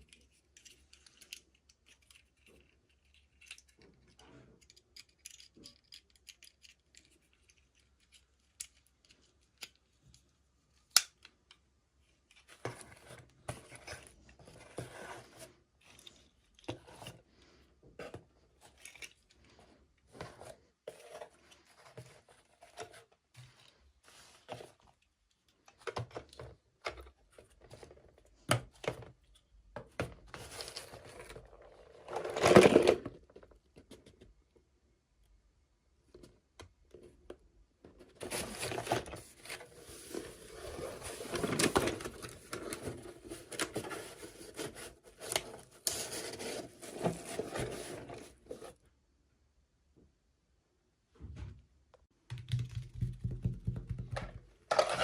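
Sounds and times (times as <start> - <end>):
toy packaging being opened: 54.7 - 55.0.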